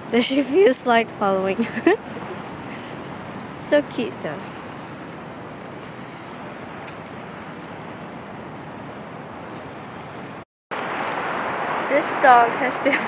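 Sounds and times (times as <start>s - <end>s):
ocean surf: 0.0s - 13.0s.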